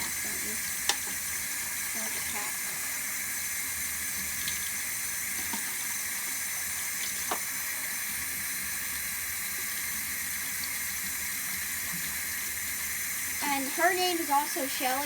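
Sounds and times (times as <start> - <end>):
tap water running into bathtub: 0.0 - 15.0.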